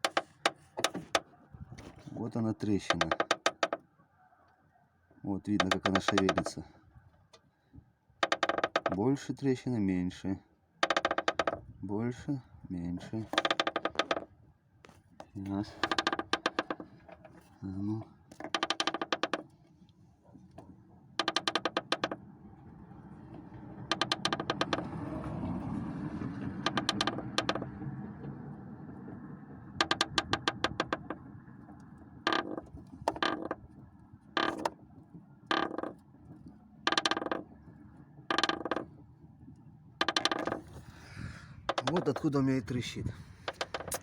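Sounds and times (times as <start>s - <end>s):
cracked metal creaking: 0.0s - 3.8s, 5.4s - 6.6s, 8.2s - 9.1s, 10.8s - 11.7s, 13.0s - 14.4s, 15.2s - 19.6s, 20.4s - 22.3s, 23.1s - 25.3s, 26.4s - 27.8s, 29.6s - 41.0s, 41.6s - 42.4s, 43.4s - 44.0s.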